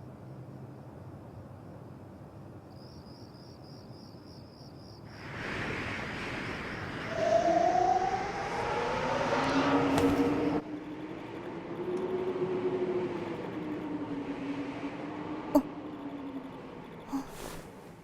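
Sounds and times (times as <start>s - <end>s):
insects chirping: 0.0s - 18.0s
sliding siren-like tones: 6.6s - 17.0s.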